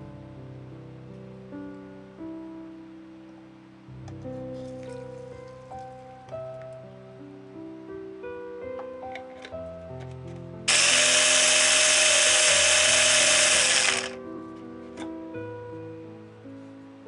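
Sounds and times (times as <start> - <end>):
soft background music: 0.0 - 17.0
kitchen appliance motor whirring: 10.7 - 14.2.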